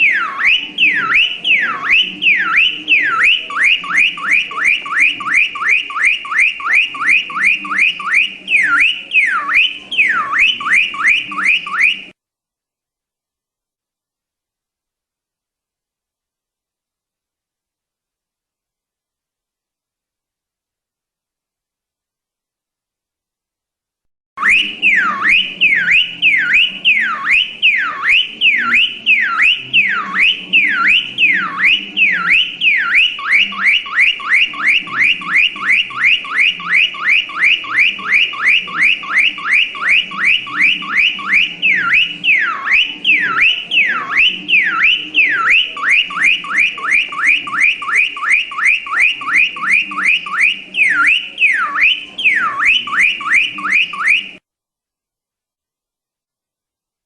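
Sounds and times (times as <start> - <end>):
car alarm siren: 0.0 - 12.2, 24.4 - 54.4.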